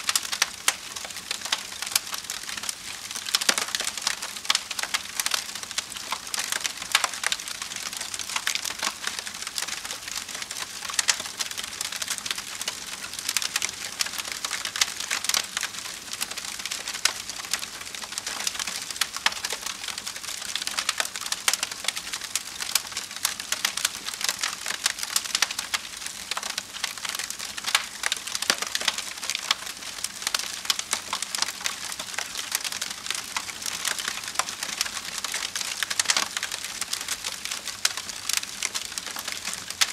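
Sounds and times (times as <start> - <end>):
wood fire crackling and popping: 0.0 - 39.9.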